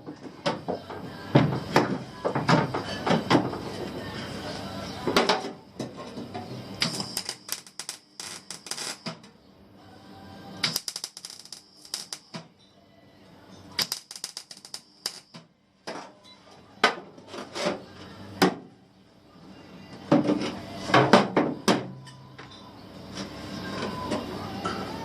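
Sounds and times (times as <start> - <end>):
welding arc crackling: 6.8 - 9.2, 10.6 - 12.4, 13.8 - 15.4.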